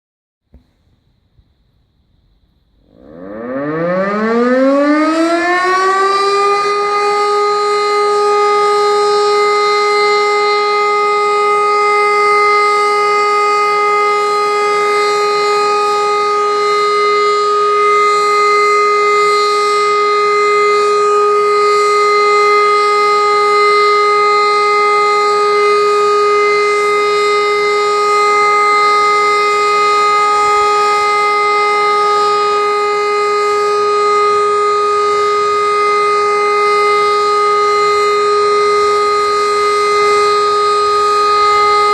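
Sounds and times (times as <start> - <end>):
siren steady tone: 2.4 - 41.9.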